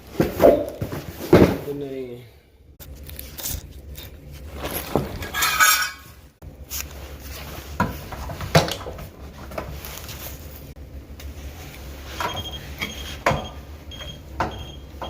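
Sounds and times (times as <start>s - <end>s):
steady low hum: 0.0s - 15.0s
metal tools clinking: 5.2s - 6.2s.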